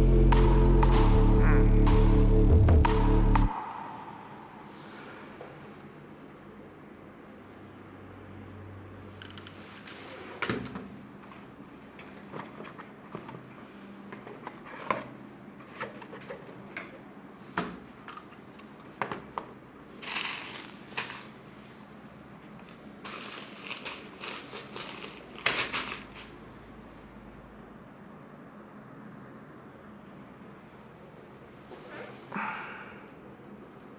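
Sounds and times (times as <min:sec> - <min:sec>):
crinkling and rustling: 0:09.3 - 0:13.5, 0:19.9 - 0:21.7, 0:22.5 - 0:26.4.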